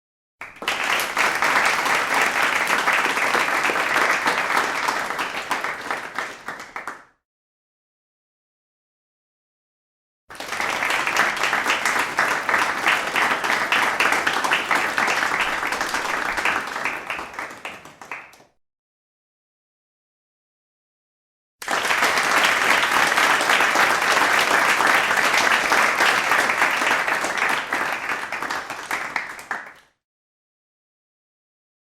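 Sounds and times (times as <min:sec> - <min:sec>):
crowd applauding: 0:00.4 - 0:07.1, 0:10.3 - 0:18.6, 0:21.6 - 0:30.0.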